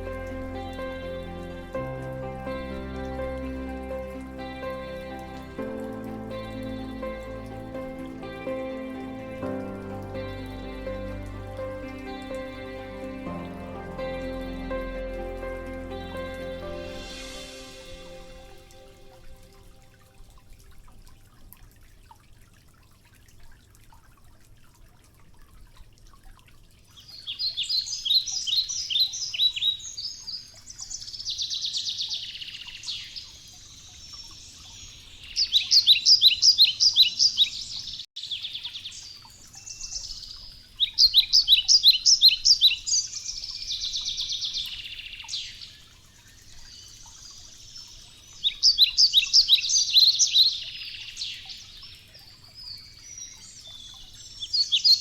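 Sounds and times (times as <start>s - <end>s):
songbird singing trills: 27.2s - 55.0s.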